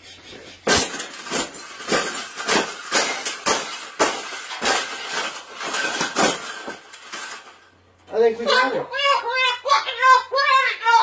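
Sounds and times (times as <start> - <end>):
rapid sharp knocks and clinks: 0.7 - 7.7.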